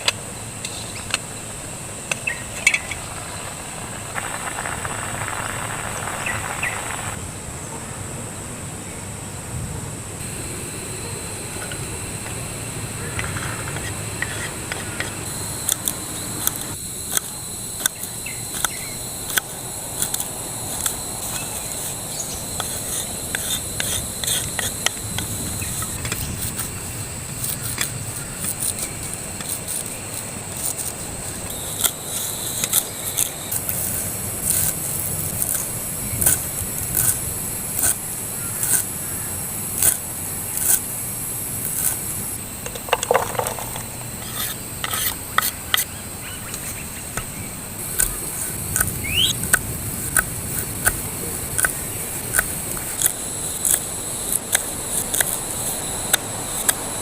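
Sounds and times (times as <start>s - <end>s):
high-pitched insect chorus: 0.0s - 9.4s, 10.2s - 57.0s
short scrapes and taps: 42.7s - 45.9s.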